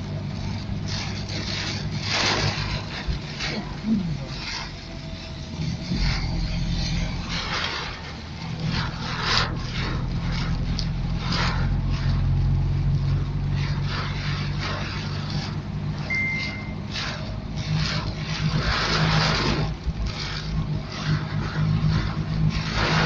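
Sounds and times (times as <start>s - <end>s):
small car engine running: 0.0s - 23.0s
tyre hiss on wet road: 0.0s - 23.0s
short high beep: 16.1s - 16.8s.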